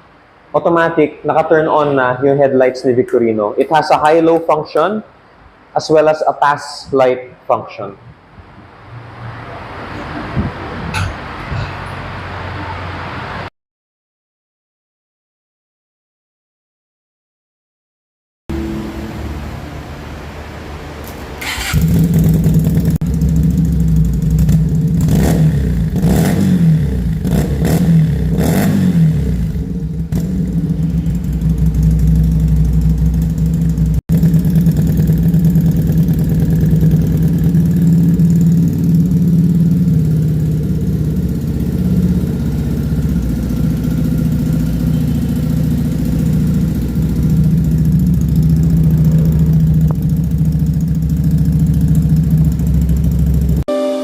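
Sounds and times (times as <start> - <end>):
motorcycle engine revving and idling: 21.4 - 53.6.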